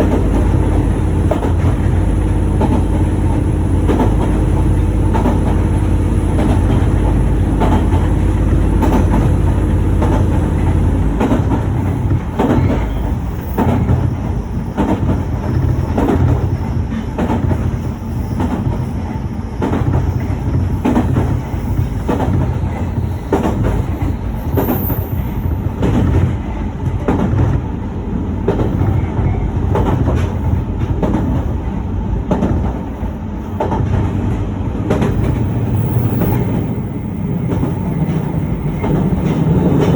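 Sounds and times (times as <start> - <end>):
wheels clacking over rail joints: 0.0 - 18.9, 33.6 - 39.9
train rumbling on track: 0.0 - 39.9.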